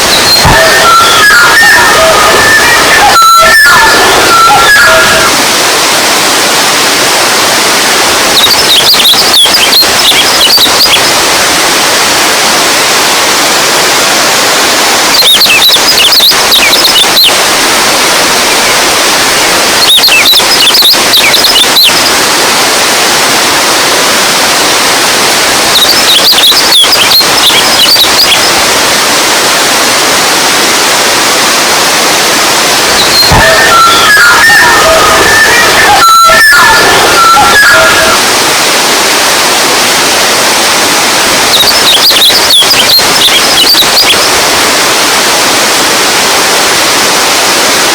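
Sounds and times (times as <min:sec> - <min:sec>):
high flickering chirps: 0:00.0 - 0:05.3, 0:32.8 - 0:38.3
running water rushing: 0:00.0 - 0:47.9.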